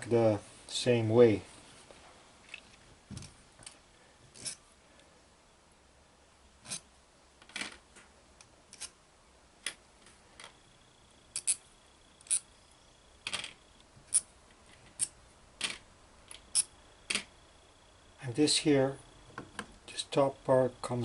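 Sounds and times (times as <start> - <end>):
metal parts clicking and tapping: 11.3 - 11.6, 13.2 - 17.3.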